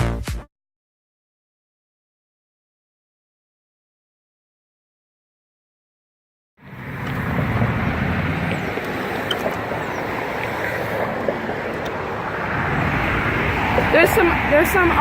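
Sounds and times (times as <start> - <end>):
highway traffic noise: 6.6 - 15.0
wind on microphone: 6.6 - 15.0.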